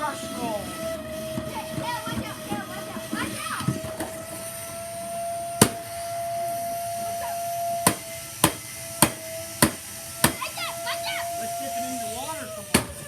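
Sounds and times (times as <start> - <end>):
vacuum cleaner motor humming: 0.0 - 13.0
sharp knocks: 5.6 - 5.9, 7.8 - 10.4, 12.7 - 13.0.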